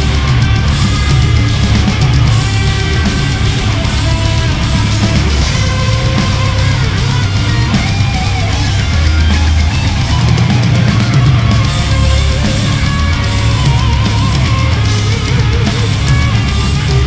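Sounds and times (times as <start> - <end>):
distorted electric guitars: 0.0 - 17.0
drum kit: 0.0 - 17.0.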